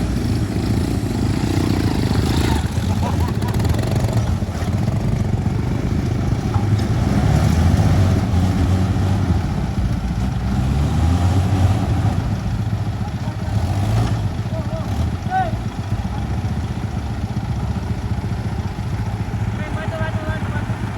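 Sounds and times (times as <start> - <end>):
truck engine running hard: 0.0 - 20.9.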